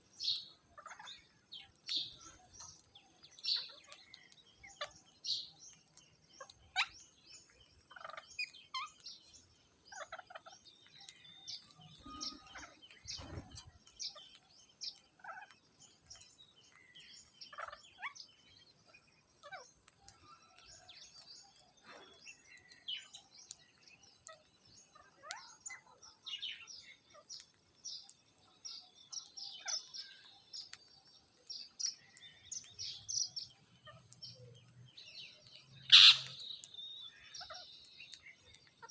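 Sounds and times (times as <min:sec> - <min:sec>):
parrots chirping and squawking: 0:00.8 - 0:01.3, 0:03.4 - 0:05.0, 0:07.9 - 0:09.2, 0:09.9 - 0:10.7, 0:11.5 - 0:14.3, 0:15.2 - 0:16.2, 0:17.4 - 0:18.3, 0:19.4 - 0:20.8, 0:29.6 - 0:30.2, 0:32.8 - 0:34.2, 0:35.8 - 0:36.5, 0:37.1 - 0:37.7.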